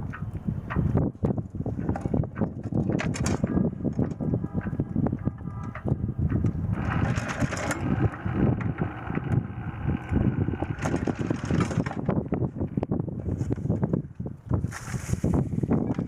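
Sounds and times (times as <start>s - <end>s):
high whirring hum: 0.0s - 14.5s
wind buffeting microphone: 0.0s - 16.0s
diesel engine running: 6.6s - 12.8s.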